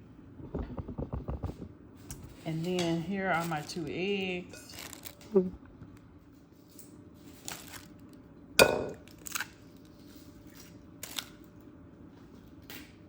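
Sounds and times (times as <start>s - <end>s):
dishes clicking and tapping: 8.6s - 9.1s.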